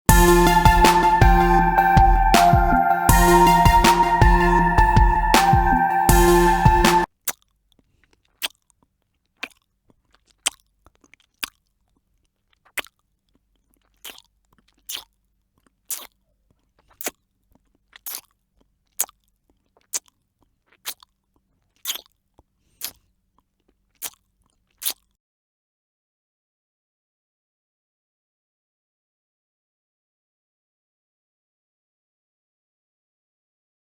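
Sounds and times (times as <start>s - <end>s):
lollipop being licked: 7.2s - 25.1s.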